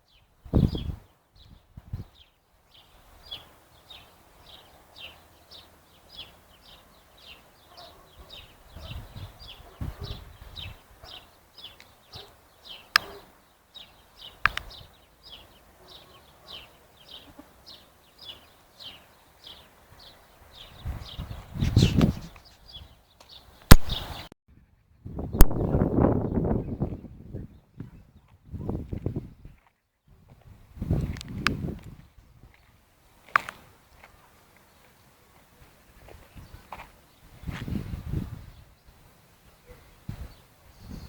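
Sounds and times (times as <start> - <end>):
sharp clicks: 14.4 - 14.7, 23.6 - 24.1.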